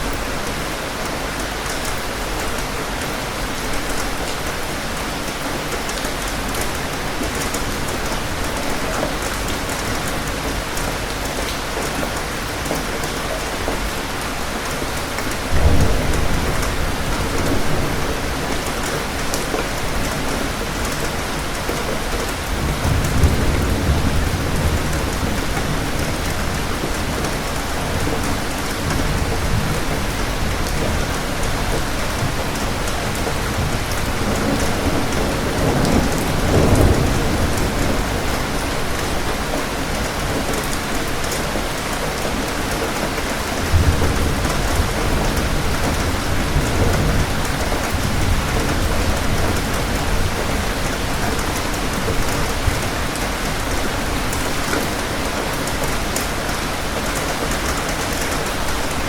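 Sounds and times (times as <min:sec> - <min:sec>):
steady rain: 0:00.0 - 0:59.0
rolling thunder: 0:15.3 - 0:41.8, 0:43.6 - 0:55.8.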